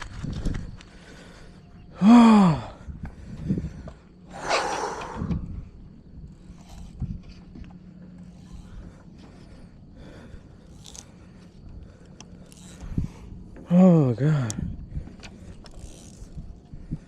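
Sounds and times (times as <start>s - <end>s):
long breathy exhale: 4.3s - 5.6s.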